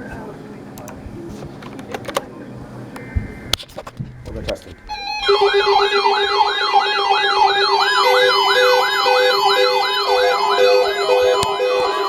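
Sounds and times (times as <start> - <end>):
electronic siren yelping: 4.8 - 12.0
beeping tone: 4.9 - 12.0.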